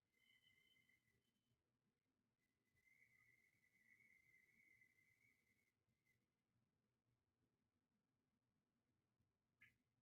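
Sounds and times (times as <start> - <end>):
faint steady high tone: 0.0 - 7.2.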